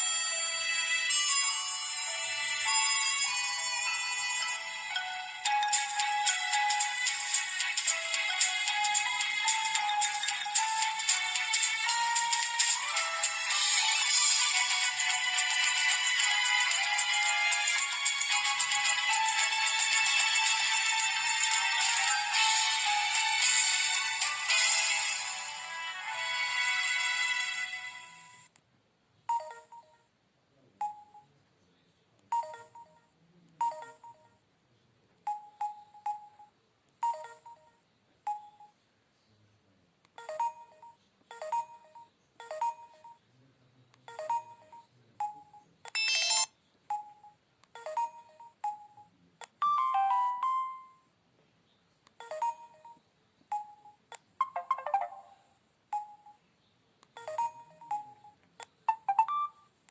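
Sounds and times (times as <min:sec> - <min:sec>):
phone beeps and chimes: 0:29.3 - 0:30.1, 0:30.8 - 0:31.3, 0:32.3 - 0:34.4, 0:35.3 - 0:38.8, 0:40.2 - 0:43.2, 0:44.1 - 0:51.1, 0:52.2 - 0:56.5, 0:57.2 - 0:59.8.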